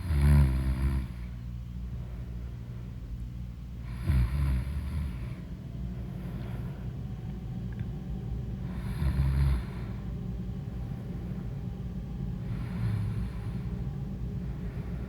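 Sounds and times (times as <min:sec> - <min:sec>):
woman snoring: 0:00.0 - 0:01.2, 0:03.8 - 0:05.3, 0:08.7 - 0:09.9, 0:12.5 - 0:13.4
steady low rumble: 0:01.0 - 0:04.0, 0:04.6 - 0:15.0.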